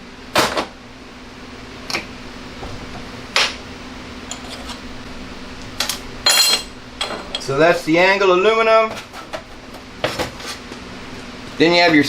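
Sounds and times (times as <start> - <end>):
metal clinks and knocks: 5.8 - 7.5.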